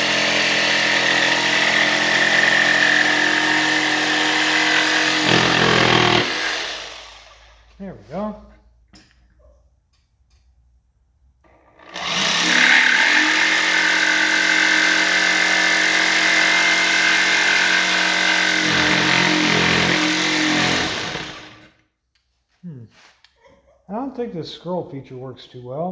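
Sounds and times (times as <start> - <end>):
jigsaw cutting: 0.0 - 7.6, 11.5 - 21.8.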